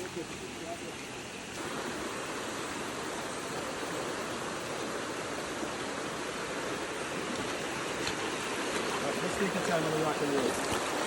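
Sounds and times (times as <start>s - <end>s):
river rushing over rocks: 0.0s - 11.0s.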